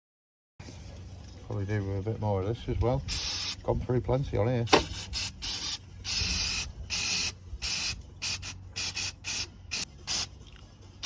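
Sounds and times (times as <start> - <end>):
aerosol spray can hissing: 3.1 - 3.6, 4.7 - 10.3.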